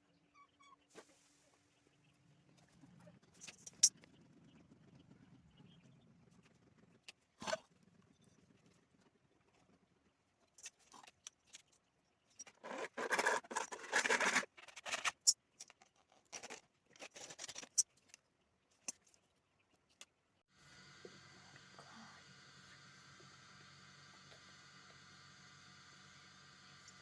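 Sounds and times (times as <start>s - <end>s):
handling clicks and scrapes: 10.4s - 20.2s.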